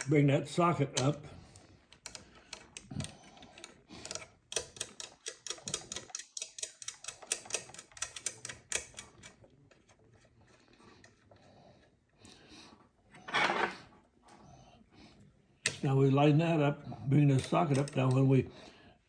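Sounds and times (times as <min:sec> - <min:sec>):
light metallic clicks and taps: 0:17.3 - 0:18.3.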